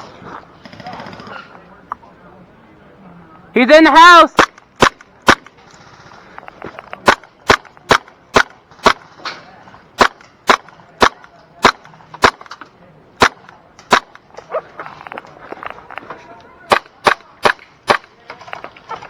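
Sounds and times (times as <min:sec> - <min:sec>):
airsoft gun shots cracking: 0:04.4 - 0:05.6, 0:06.4 - 0:09.1, 0:10.0 - 0:12.6, 0:13.2 - 0:16.1, 0:16.7 - 0:19.0.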